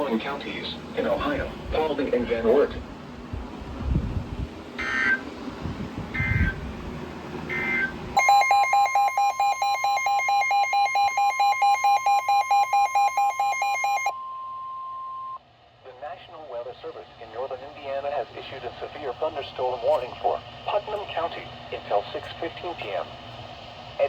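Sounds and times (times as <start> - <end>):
rapid pulsing beep: 7.5 - 15.4
steady high alert tone: 7.5 - 15.4.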